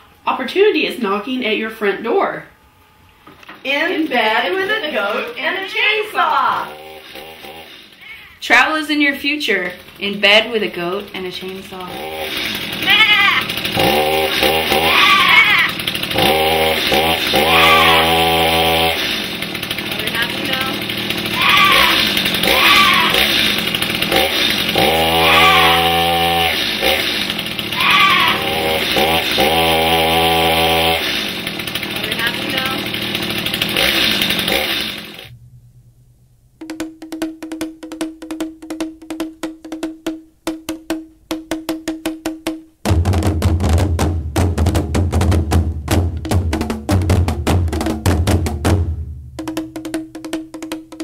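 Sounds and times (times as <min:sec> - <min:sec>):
bass and drums: 0:03.6 - 0:51.0
chainsaw engine revving: 0:03.8 - 0:08.1, 0:09.6 - 0:35.3
wood block rhythm: 0:36.6 - 0:51.0.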